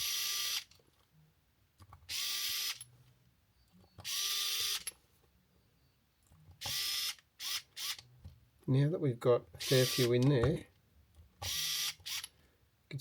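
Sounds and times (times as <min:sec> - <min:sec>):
cordless drill driving screws: 0:04.0 - 0:04.8, 0:09.6 - 0:10.2, 0:11.4 - 0:12.3.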